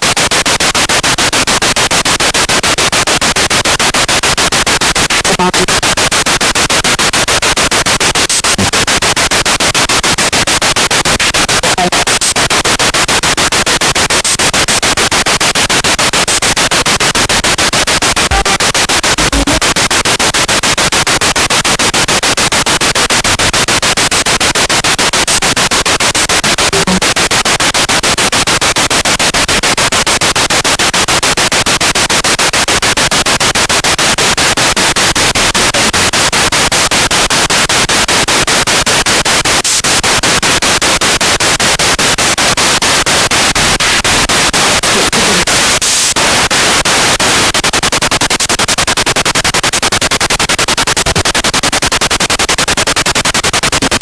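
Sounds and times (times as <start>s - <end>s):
radio static hiss pulsing: 0.0s - 54.0s
short radio blips: 5.2s - 5.8s, 11.6s - 12.5s, 18.1s - 19.9s, 26.7s - 27.2s, 44.8s - 46.4s.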